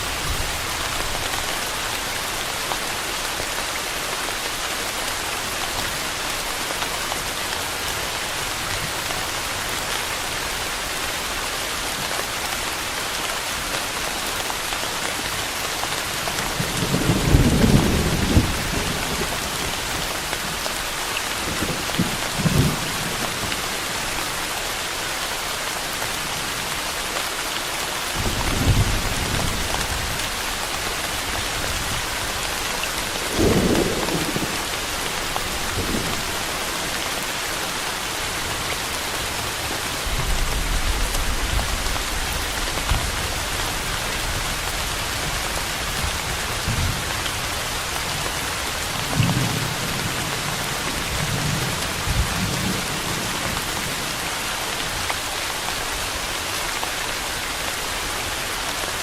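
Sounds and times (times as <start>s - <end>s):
steady rain: 0.0s - 59.0s
low rolls of thunder: 33.1s - 34.9s.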